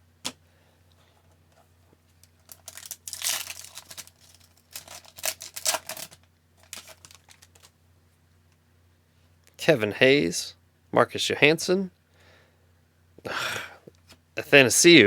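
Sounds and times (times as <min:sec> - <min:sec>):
wrapper tearing and crinkling: 0:02.3 - 0:07.8.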